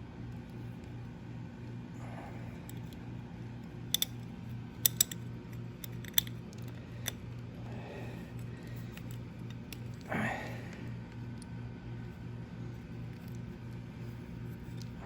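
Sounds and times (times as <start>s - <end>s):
metallic tool clicks and taps: 3.9s - 5.2s, 5.8s - 7.2s.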